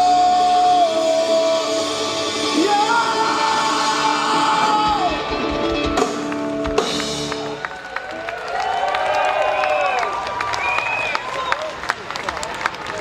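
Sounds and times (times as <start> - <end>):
live rock band: 0.0 - 7.8.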